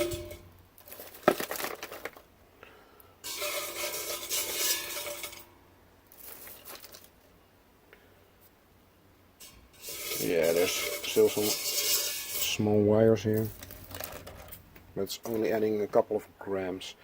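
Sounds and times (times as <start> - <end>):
copper wire clinking against metal pot: 0.0 - 0.5, 3.2 - 5.5, 9.4 - 12.7.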